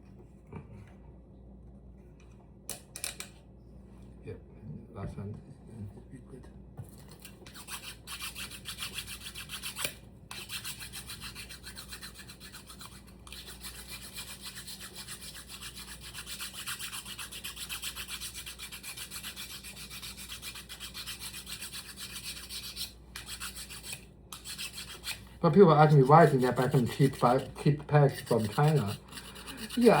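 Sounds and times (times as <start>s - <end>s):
sanding wooden peg: 7.6s - 25.2s, 25.8s - 30.0s.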